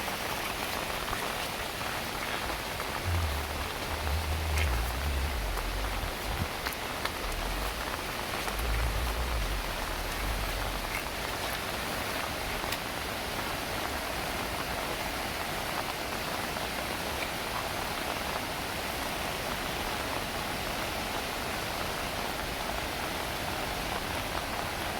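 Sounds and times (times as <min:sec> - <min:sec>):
heavy rain: 0:00.6 - 0:12.2
separate raindrops: 0:02.2 - 0:11.7.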